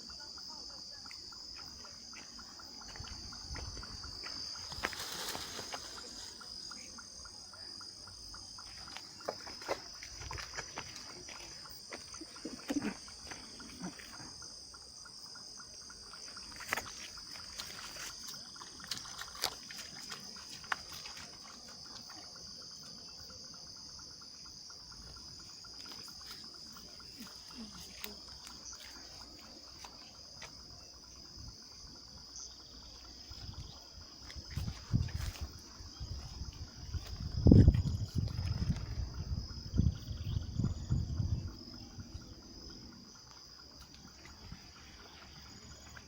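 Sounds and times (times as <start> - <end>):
insects shrilling: 1.4 - 7.2.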